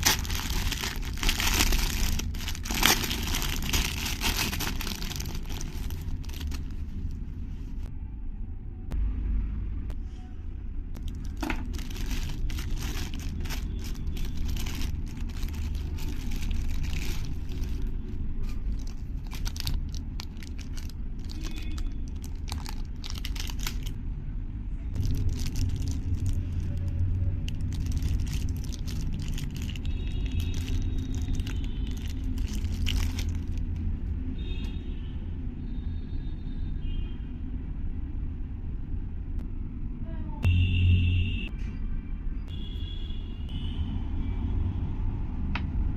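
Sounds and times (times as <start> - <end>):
packaging crinkling and tearing: 0.0 - 7.2, 11.0 - 24.0, 25.0 - 33.9
low rumble: 0.0 - 34.3.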